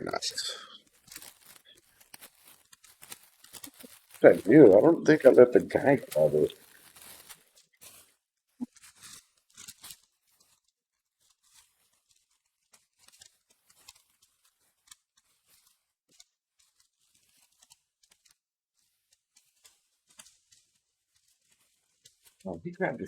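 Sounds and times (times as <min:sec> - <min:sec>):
packaging crinkling and tearing: 0:00.0 - 0:23.0.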